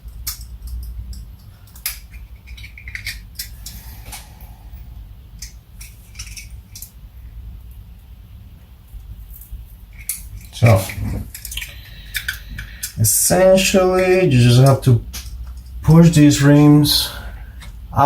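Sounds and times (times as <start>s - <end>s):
plastic parts clicking and tapping: 0.0s - 3.8s
faint low hum: 0.0s - 18.0s.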